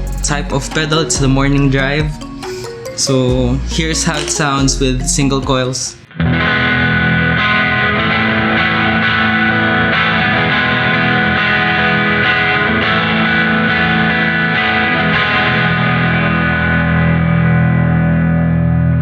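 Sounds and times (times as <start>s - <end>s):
overdriven electric guitar: 6.1s - 19.0s.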